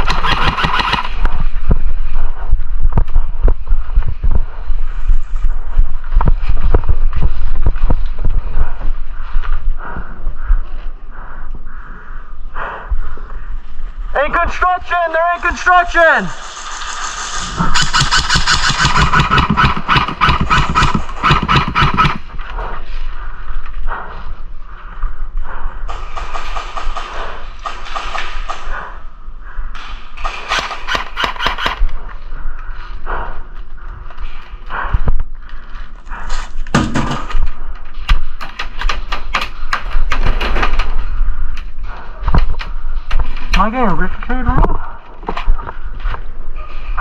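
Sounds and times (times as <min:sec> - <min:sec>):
airsoft gun firing full-auto: 0:00.0 - 0:01.2, 0:17.7 - 0:22.2, 0:30.2 - 0:31.8
scattered quieter shots and clicks: 0:00.0 - 0:01.9, 0:14.2 - 0:22.6, 0:25.8 - 0:29.1, 0:29.7 - 0:32.2
low rumble of movement: 0:01.0 - 0:14.2.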